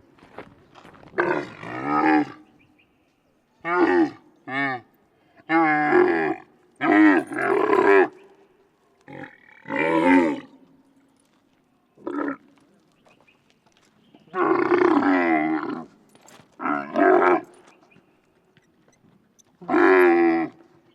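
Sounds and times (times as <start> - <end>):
camel moaning and calling: 1.2 - 2.5, 3.6 - 4.9, 5.5 - 8.2, 9.1 - 10.6, 14.3 - 16.0, 16.6 - 17.7, 19.0 - 20.8.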